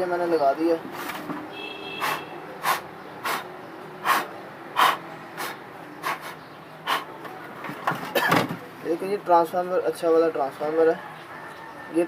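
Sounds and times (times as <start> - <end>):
short puffs of breath: 1.9 - 7.2.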